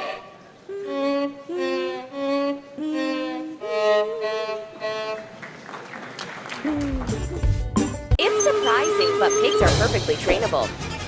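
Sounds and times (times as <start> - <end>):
violin playing slow melody: 0.7 - 5.3.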